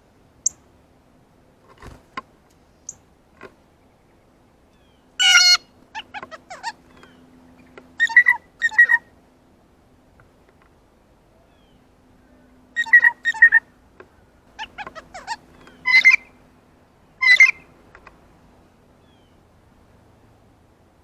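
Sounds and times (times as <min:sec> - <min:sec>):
blue jay calling: 0:04.8 - 0:09.1, 0:12.8 - 0:13.7, 0:14.5 - 0:16.4, 0:17.2 - 0:17.8.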